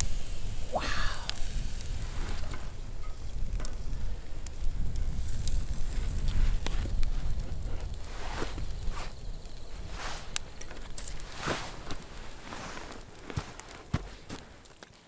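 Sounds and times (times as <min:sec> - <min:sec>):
campfire crackling: 0:00.0 - 0:15.0
sharp pops: 0:06.2 - 0:14.8.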